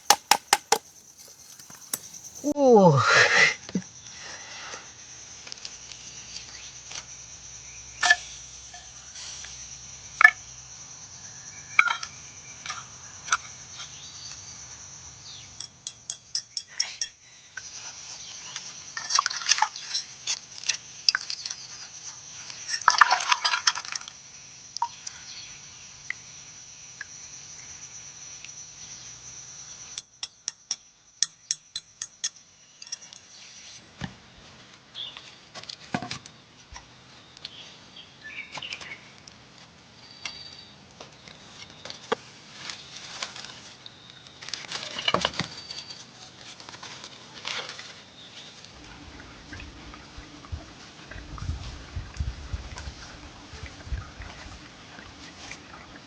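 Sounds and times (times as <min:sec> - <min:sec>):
quick ticks: 0:00.0 - 0:02.2
scraping: 0:00.0 - 0:02.5.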